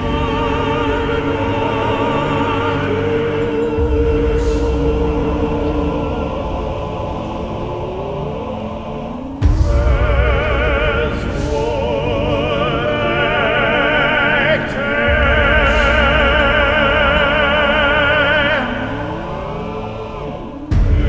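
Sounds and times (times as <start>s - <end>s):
operatic singing: 0.0s - 21.0s
heavy bass: 2.9s - 8.2s, 9.4s - 14.1s, 15.0s - 21.0s.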